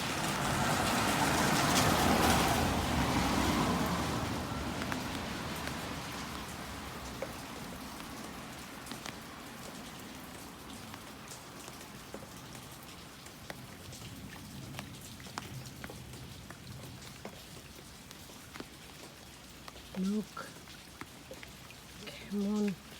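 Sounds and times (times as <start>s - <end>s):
rain falling: 0.0s - 22.9s.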